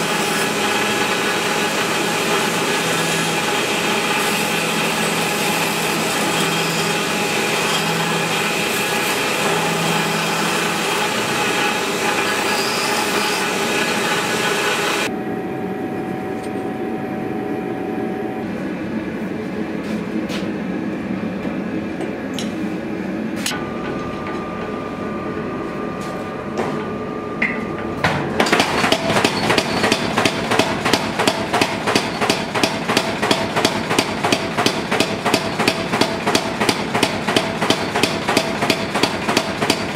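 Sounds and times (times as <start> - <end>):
power tool running: 0.0 - 15.1
workshop noise: 0.0 - 39.9.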